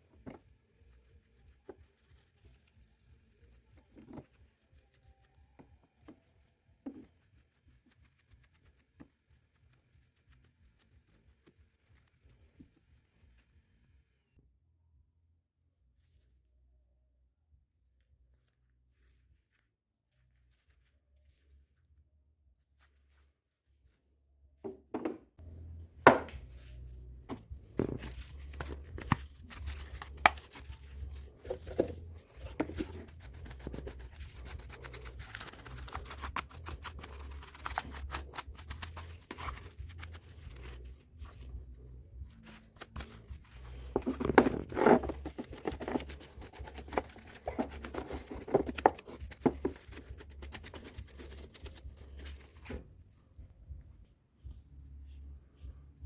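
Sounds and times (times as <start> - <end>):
scraping and rustling: 26.4 - 52.8.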